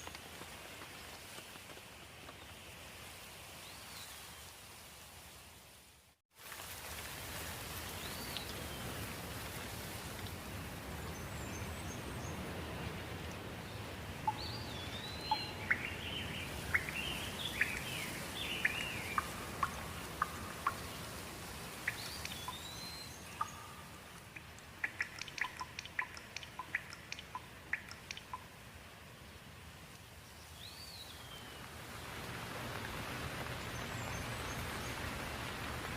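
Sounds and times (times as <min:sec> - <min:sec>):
steady rain: 0:00.0 - 0:35.9
birds chirping: 0:13.8 - 0:28.5
quick sharp ticks: 0:24.2 - 0:28.4.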